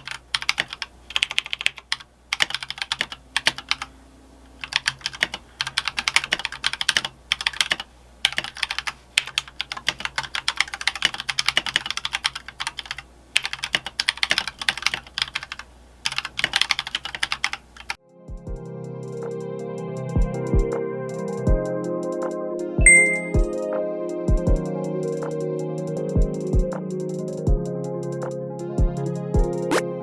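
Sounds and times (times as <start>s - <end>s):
mechanical keyboard typing: 0.0s - 3.9s, 4.6s - 18.0s
music: 18.0s - 30.0s.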